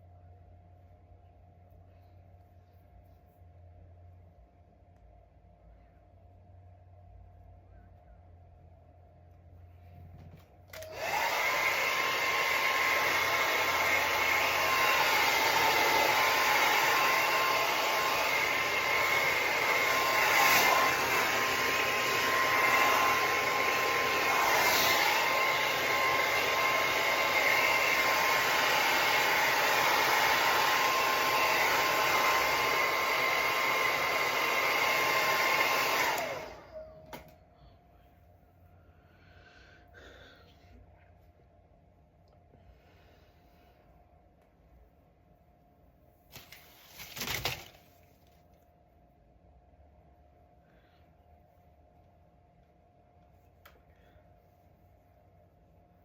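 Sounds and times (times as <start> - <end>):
hair dryer whining: 10.7 - 37.4.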